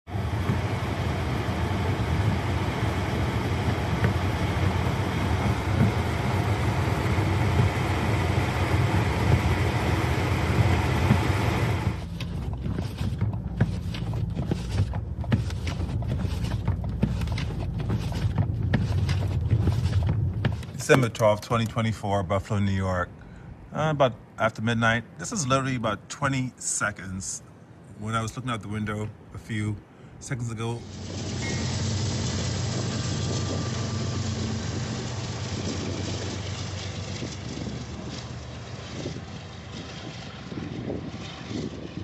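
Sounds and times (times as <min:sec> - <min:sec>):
blizzard wind roaring: 0:00.1 - 0:13.1, 0:30.4 - 0:42.0
wind buffeting microphone: 0:30.8 - 0:42.0.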